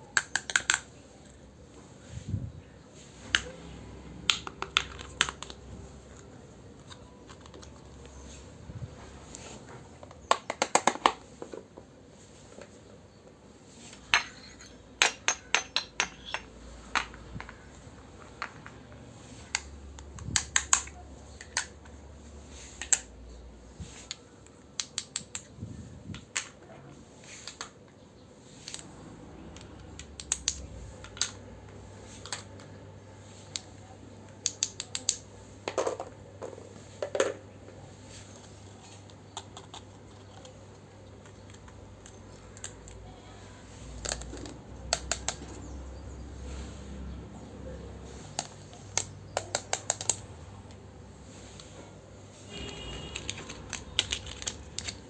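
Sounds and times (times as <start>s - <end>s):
toy kitchen pieces clicking: 0.1s - 1.3s, 4.2s - 8.1s, 10.0s - 11.2s, 14.1s - 18.8s, 19.4s - 21.9s, 22.7s - 23.1s, 24.1s - 25.5s, 28.6s - 31.4s, 34.4s - 36.1s, 38.7s - 43.1s, 43.7s - 45.8s, 48.2s - 50.8s, 52.5s - 55.0s.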